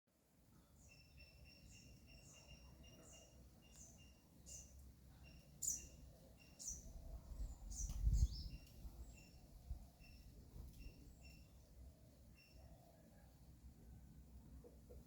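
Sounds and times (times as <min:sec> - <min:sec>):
small birds chirping: 0:00.6 - 0:12.8
wind rumbling on microphone: 0:06.8 - 0:11.0.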